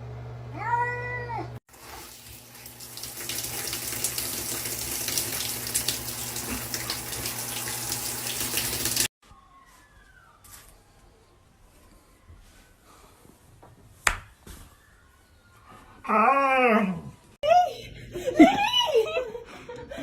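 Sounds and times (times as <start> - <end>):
water running with splashes: 1.7 - 9.1.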